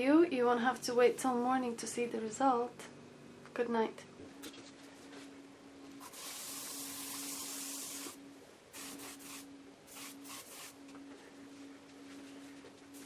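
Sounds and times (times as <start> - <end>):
faint steady hum: 0.0 - 13.0
hissing bursts: 6.0 - 8.2, 8.8 - 10.8.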